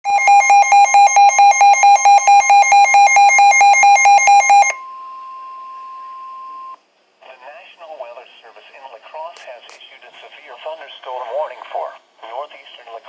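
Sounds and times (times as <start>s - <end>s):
alert alarm beeping rapidly: 0.1s - 4.8s
steady warning alarm tone: 0.1s - 6.8s.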